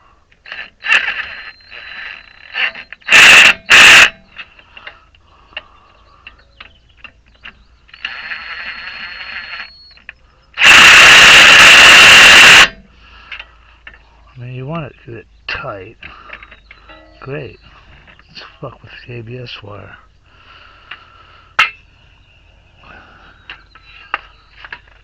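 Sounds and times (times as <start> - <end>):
impact wrench hammering: 2.6 - 4.2, 21.6 - 21.8.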